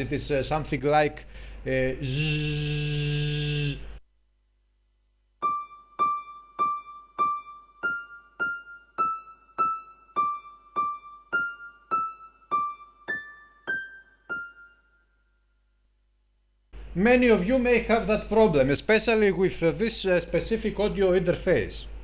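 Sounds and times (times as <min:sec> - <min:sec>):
electric piano melody: 0:05.4 - 0:15.1.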